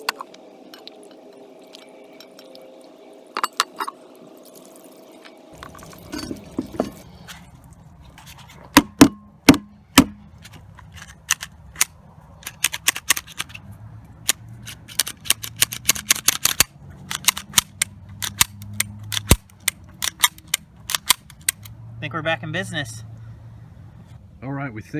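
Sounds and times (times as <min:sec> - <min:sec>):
pistol action clacking: 0:09.5 - 0:13.6, 0:14.3 - 0:21.7.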